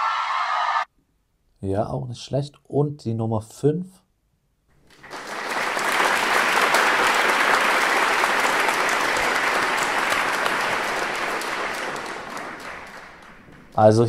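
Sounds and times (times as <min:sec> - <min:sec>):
crowd applause: 0:04.9 - 0:14.0.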